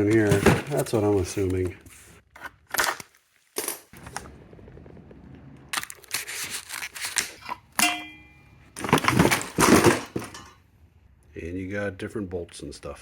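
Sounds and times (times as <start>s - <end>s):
packaging rustling and tearing: 5.7s - 7.6s
metallic ring: 7.8s - 8.6s.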